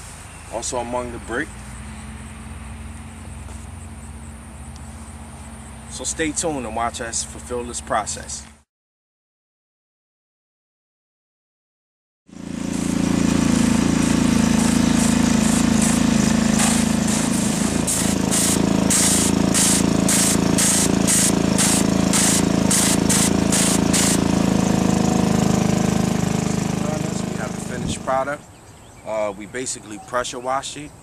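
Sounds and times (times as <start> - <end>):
pressure washer spray hissing: 12.4 - 28.3.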